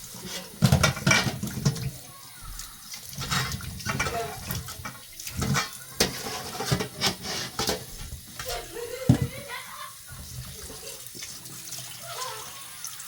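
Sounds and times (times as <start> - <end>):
water running at a sink: 0.0 - 13.0
utensils knocking and clattering: 0.2 - 2.0, 3.2 - 10.4.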